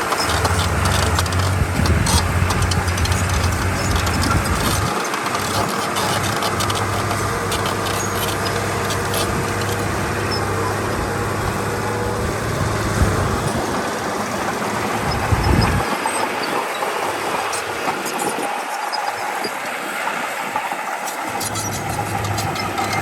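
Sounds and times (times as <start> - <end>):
diesel machinery engine drone: 0.0 - 23.0
rattles and clicks: 0.0 - 23.0.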